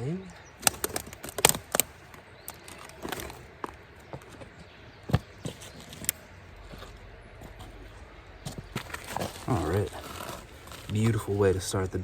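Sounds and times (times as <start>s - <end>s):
clicks and knocks of handling: 0.6s - 7.9s.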